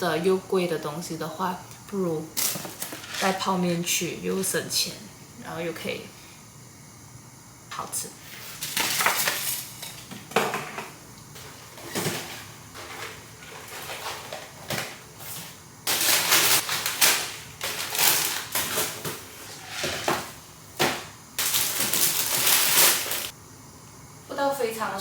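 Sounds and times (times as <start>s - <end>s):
groceries knocking and clattering: 2.4s - 3.4s, 8.6s - 23.3s
packaging rustling: 11.8s - 19.6s, 21.4s - 23.3s.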